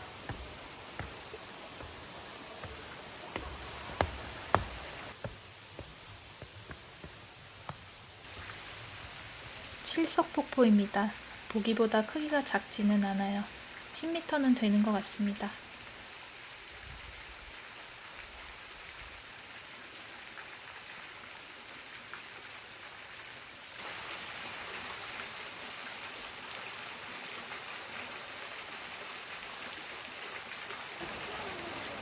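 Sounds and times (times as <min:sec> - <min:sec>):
waterfall and stream rushing: 0:00.0 - 0:09.9, 0:23.8 - 0:32.0.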